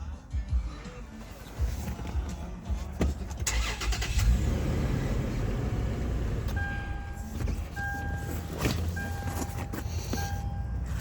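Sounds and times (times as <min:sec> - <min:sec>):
car engine idling: 0:03.4 - 0:11.0
dashboard warning chime beeping: 0:06.5 - 0:11.0.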